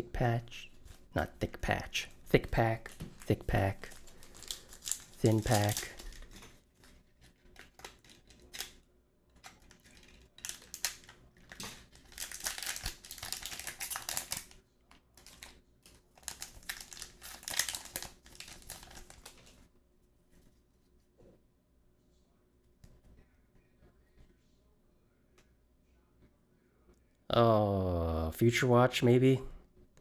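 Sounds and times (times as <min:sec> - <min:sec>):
wrapper crinkling and tearing: 0:02.8 - 0:08.8, 0:09.4 - 0:19.6.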